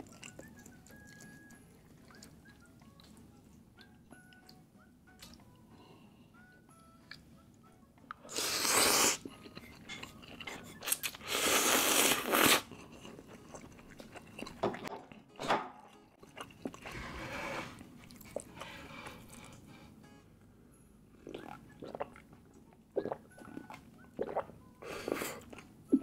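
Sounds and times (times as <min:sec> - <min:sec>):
chewing: 0:00.0 - 0:03.2, 0:09.0 - 0:15.2, 0:15.9 - 0:17.1, 0:17.8 - 0:19.6, 0:21.2 - 0:26.0
loud noodle slurping: 0:08.3 - 0:09.2, 0:11.2 - 0:12.7.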